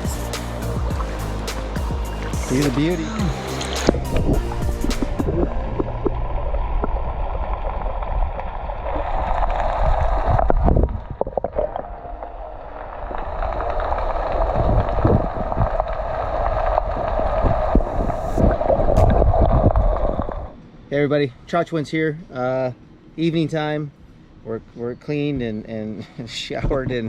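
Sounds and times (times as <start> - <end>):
river water rushing and gurgling: 0.0 - 19.4.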